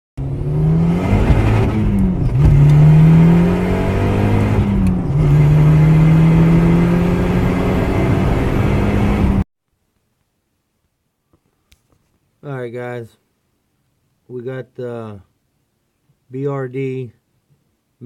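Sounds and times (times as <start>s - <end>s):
car engine revving: 0.2s - 9.4s.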